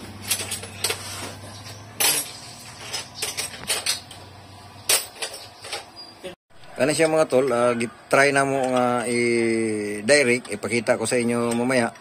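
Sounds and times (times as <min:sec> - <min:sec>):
metal tools clinking on engine parts: 0:00.0 - 0:06.2.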